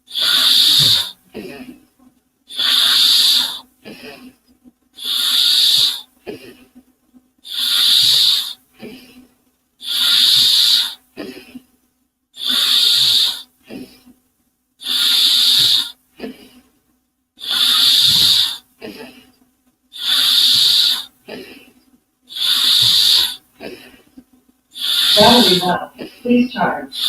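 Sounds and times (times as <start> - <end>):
person puffing like steam engine: 0.0 - 1.3, 2.5 - 3.7, 5.0 - 6.2, 7.5 - 8.6, 9.8 - 11.0, 12.4 - 14.1, 14.8 - 16.3, 17.4 - 19.3, 20.0 - 24.1, 24.8 - 27.0
person breathing in: 0.1 - 1.2, 24.8 - 26.3.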